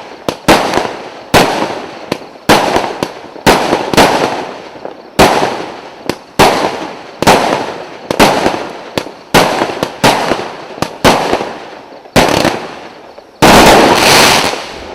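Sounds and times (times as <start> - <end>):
fireworks reports and bursts: 0.0 - 14.9
loud firework blast: 12.2 - 14.9.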